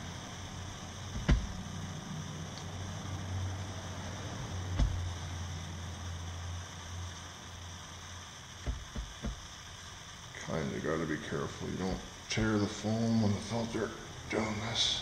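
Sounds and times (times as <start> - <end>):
steady low hum: 0.0 - 15.0
sharp knocks on metal screen: 1.2 - 1.5.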